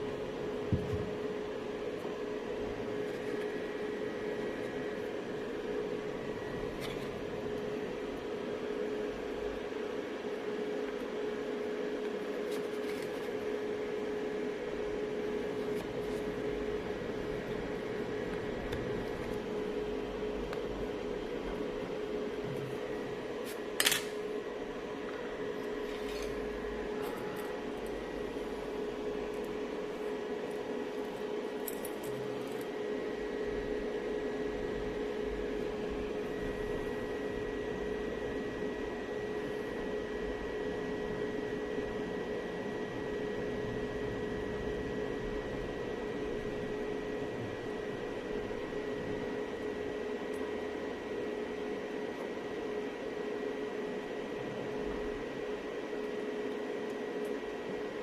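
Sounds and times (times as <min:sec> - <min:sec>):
steady mid-pitched hum: 0:00.0 - 0:58.0.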